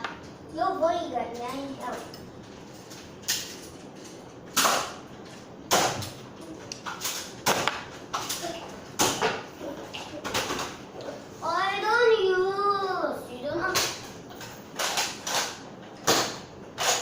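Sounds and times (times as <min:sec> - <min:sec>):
toy blasters firing foam darts: 0:14.8 - 0:17.0.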